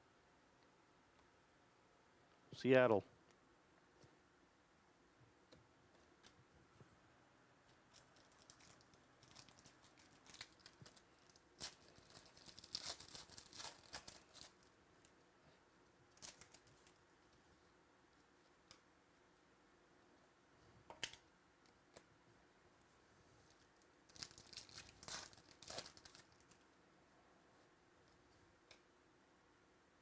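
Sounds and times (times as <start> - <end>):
card pack wrapper crinkling: 7.9 - 14.7, 16.2 - 16.9, 24.1 - 26.6.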